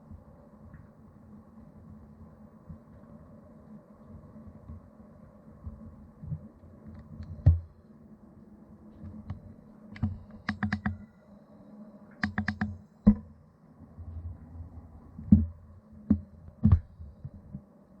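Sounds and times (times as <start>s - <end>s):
sharp clicks and taps: 10.0s - 11.0s, 12.2s - 13.2s.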